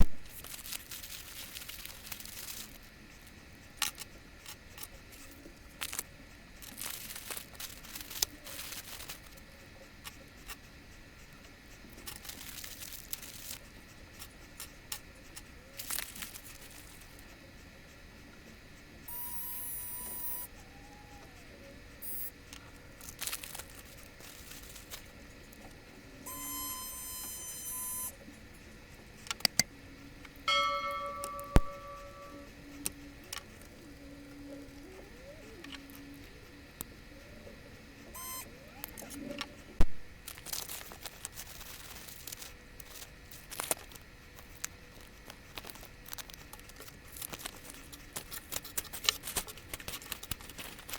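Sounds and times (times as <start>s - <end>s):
packaging crinkling: 0.3s - 2.8s, 6.6s - 9.3s, 12.1s - 13.6s, 23.0s - 25.2s, 40.2s - 50.9s
steady tones: 30.5s - 36.2s.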